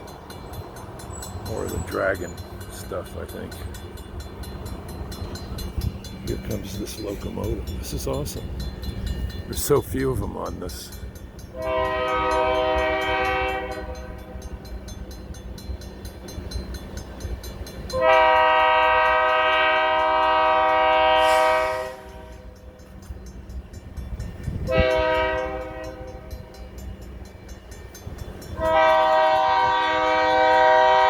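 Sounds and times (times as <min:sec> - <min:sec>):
locomotive engine rumble: 0:00.0 - 0:31.0
locomotive air horn chord: 0:11.6 - 0:14.3, 0:17.9 - 0:22.5, 0:24.7 - 0:26.4, 0:28.6 - 0:31.0.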